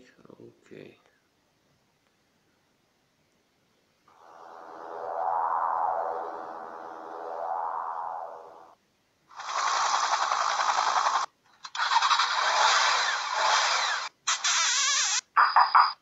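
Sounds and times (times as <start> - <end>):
pitched tone: 4.1 - 8.8.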